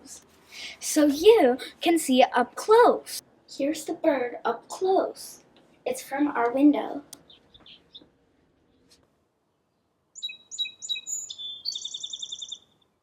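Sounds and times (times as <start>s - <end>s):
songbird singing with trill: 10.2s - 12.8s.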